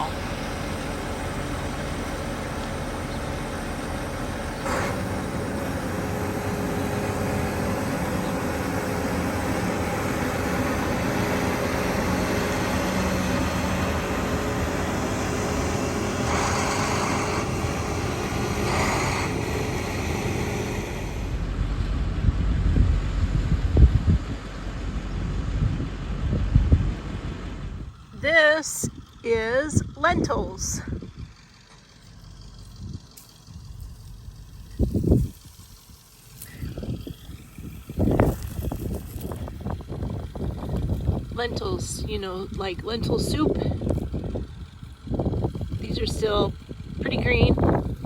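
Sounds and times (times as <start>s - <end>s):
vehicle engine hum: 0.0s - 48.0s
short hissing rushes: 14.3s - 21.4s, 33.2s - 39.8s.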